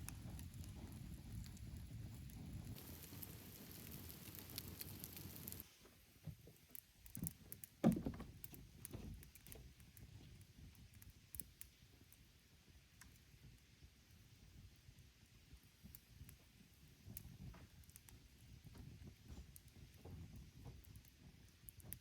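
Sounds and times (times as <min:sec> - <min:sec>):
campfire crackling and popping: 0:00.0 - 0:05.7, 0:06.7 - 0:12.2, 0:17.0 - 0:22.0
steady hiss: 0:00.0 - 0:06.3.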